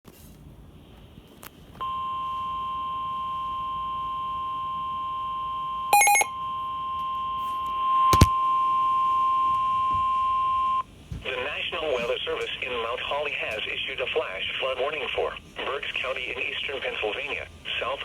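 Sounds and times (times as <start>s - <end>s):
steady alarm beep: 1.8s - 10.8s.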